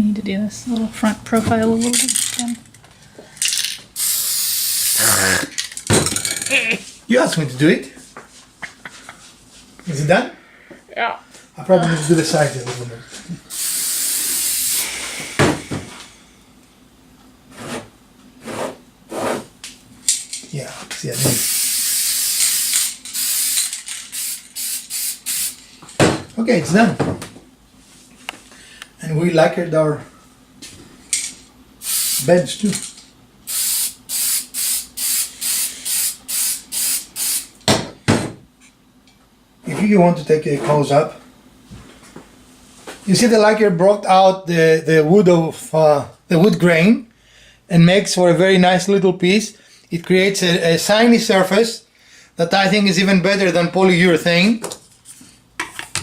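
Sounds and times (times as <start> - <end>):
aerosol spray can hissing: 4.0 - 5.2, 13.5 - 15.6, 21.2 - 25.6, 31.8 - 32.3, 33.5 - 37.5.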